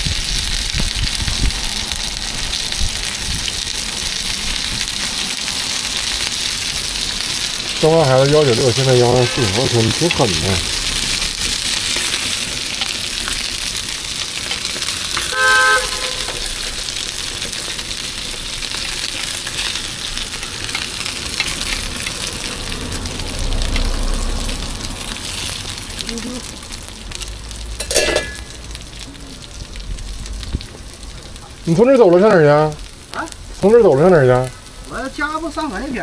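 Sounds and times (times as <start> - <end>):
food sizzling on a griddle: 0.0 - 36.0
vehicle horn toot: 8.8 - 10.1, 15.2 - 16.8.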